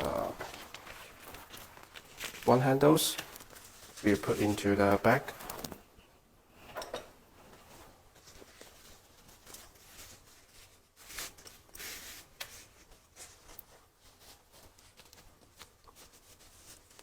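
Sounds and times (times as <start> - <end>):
plastic bag crinkling: 0.0 - 5.8.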